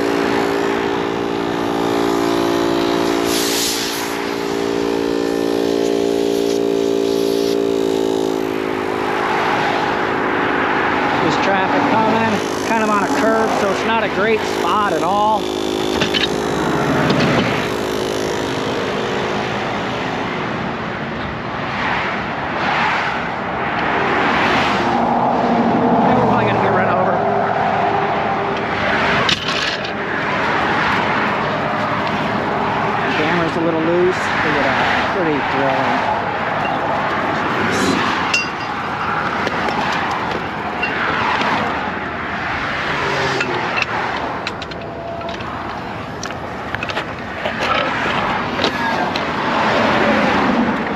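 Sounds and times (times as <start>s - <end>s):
highway traffic rushing: 0.0s - 50.9s
vehicles sweeping past: 0.0s - 50.9s.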